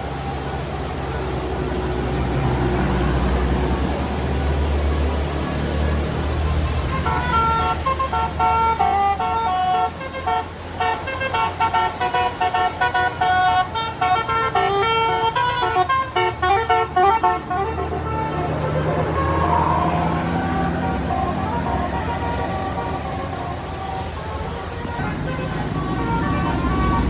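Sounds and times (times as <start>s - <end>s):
bus engine running: 0.0s - 27.0s
musical bus horn melody: 6.8s - 27.0s.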